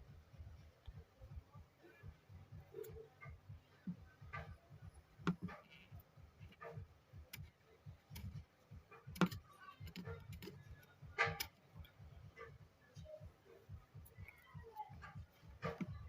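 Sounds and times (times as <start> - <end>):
small objects clicking and tapping: 9.0 - 12.0.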